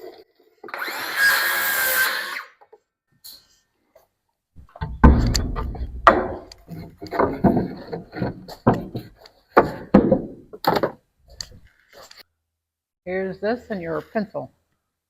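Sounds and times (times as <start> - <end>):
wooden boards knocking: 4.6 - 11.6.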